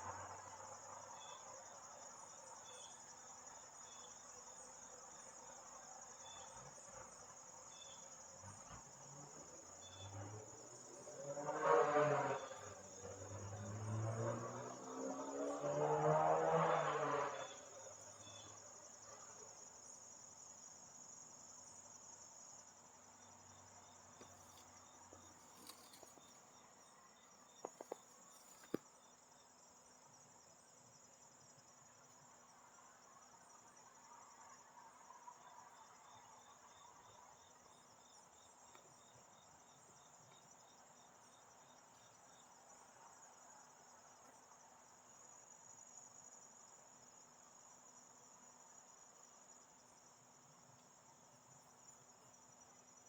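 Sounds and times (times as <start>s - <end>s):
crickets chirring: 0.0s - 53.0s.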